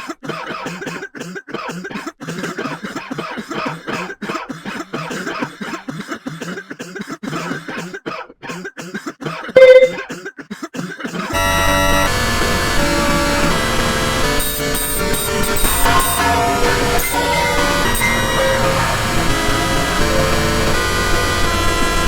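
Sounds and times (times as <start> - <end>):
person coughing: 0.0 - 11.3
loud steady tone: 9.6 - 10.0, 11.4 - 20.0
music: 11.4 - 22.0.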